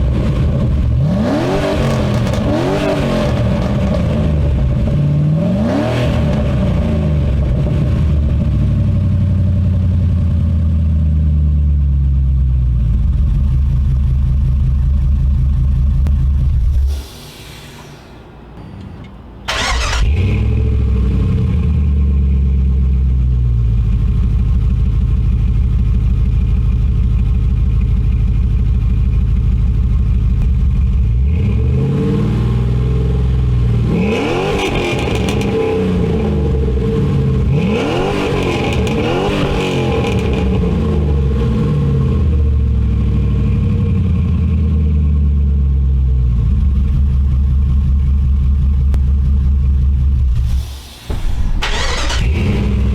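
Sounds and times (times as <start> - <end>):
engine revving: 0.0 - 8.6, 19.5 - 22.1, 31.2 - 43.1, 50.3 - 52.9
engine starting and idling: 18.8 - 21.3, 50.2 - 52.9.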